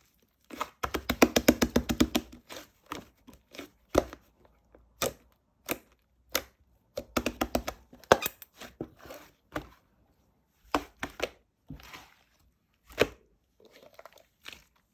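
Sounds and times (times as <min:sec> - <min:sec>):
sharp clicks and taps: 0:05.0 - 0:08.4
rustling scrapes: 0:08.5 - 0:09.5.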